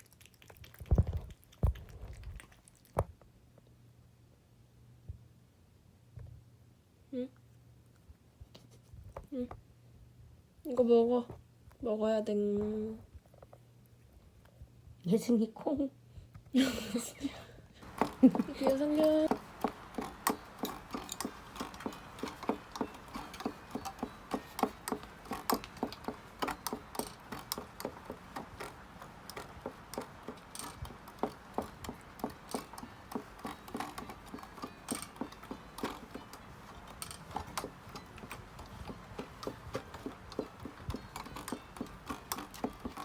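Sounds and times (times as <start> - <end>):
cat crunching a treat: 0.0 - 3.0.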